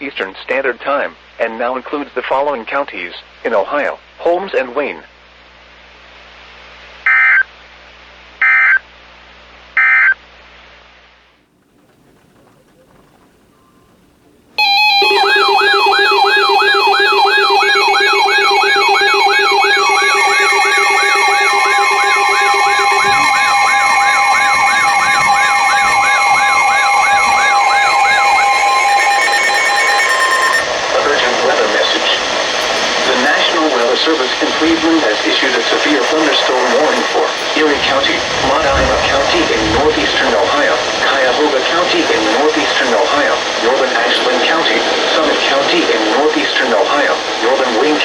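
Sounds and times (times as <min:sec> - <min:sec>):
radio hiss with low hum: 0:00.0 - 0:14.6, 0:15.4 - 0:29.5, 0:30.4 - 0:48.0
buzzing digital data tones: 0:14.6 - 0:31.7.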